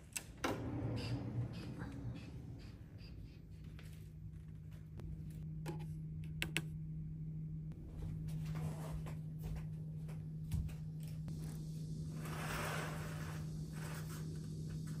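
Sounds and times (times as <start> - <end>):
steady low hum: 0.0 - 15.0
hiss-like noise: 11.3 - 15.0.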